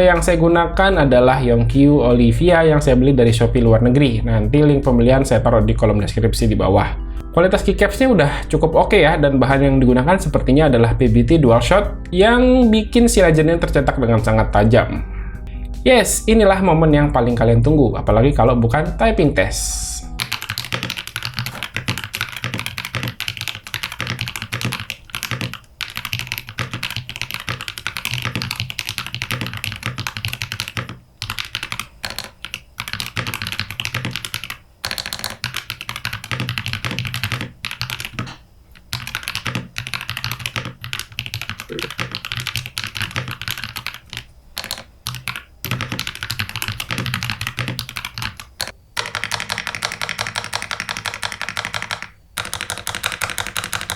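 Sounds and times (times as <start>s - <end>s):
mechanical keyboard typing: 20.2s - 53.9s.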